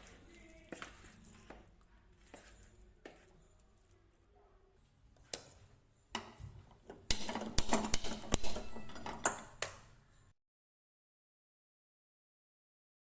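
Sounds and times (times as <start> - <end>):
kitchen utensils clattering: 6.9 - 9.6.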